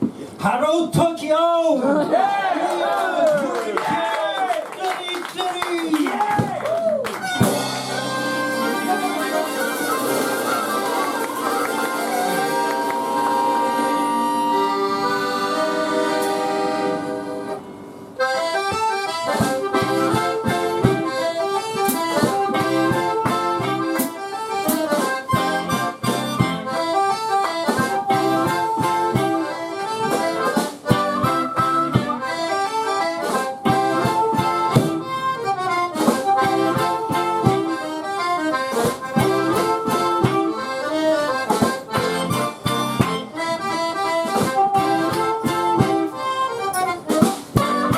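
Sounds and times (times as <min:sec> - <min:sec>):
bass: 0:06.1 - 0:47.9
drum beat: 0:06.2 - 0:13.8, 0:18.7 - 0:26.8, 0:47.0 - 0:47.9
guitar: 0:06.4 - 0:47.9
accordion melody: 0:07.1 - 0:47.9
harmonica: 0:07.1 - 0:47.9.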